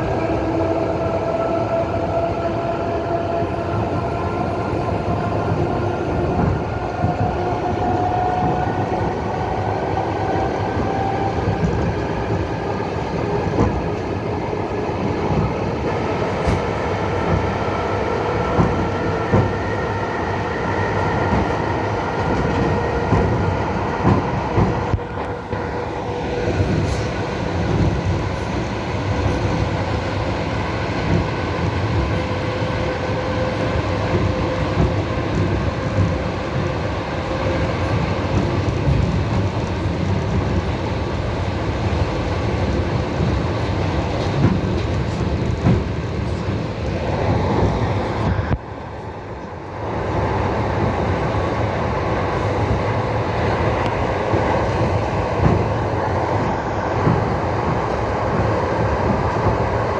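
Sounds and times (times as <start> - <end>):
train wheels clattering on rails: 10.4 - 17.6, 18.2 - 19.8, 21.0 - 48.6, 50.7 - 59.9.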